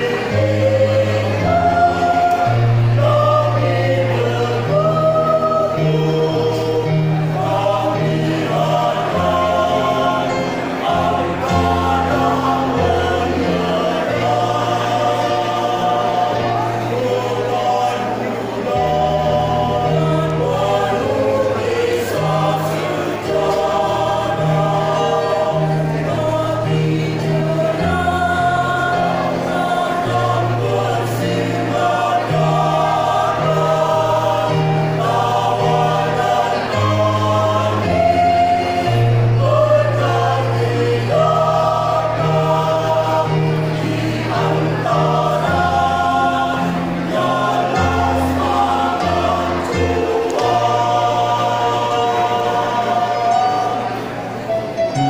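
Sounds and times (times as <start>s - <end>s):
choir singing in harmony: 0.0s - 55.0s.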